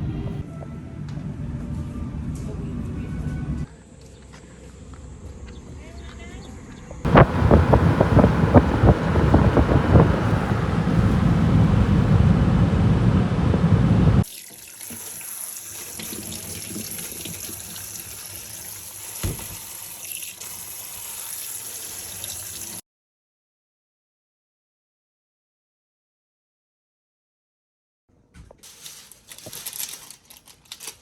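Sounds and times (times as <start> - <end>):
low thump: 7.1 - 14.2
tap water running into a sink: 14.2 - 22.8.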